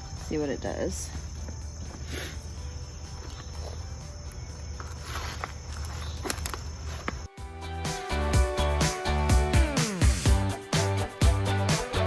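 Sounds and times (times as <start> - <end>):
insects trilling: 0.0 - 7.3
handling clicks and rustles: 1.0 - 7.3
upbeat music: 7.3 - 12.0.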